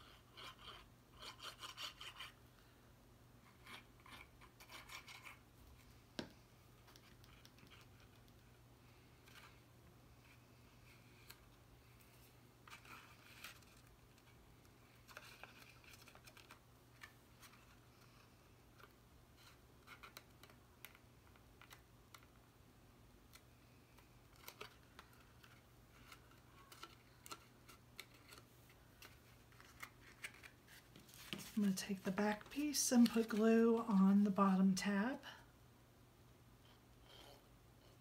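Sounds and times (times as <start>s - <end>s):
low steady hum: 0.0s - 38.0s
cardstock clicks and scrapes: 24.0s - 33.4s.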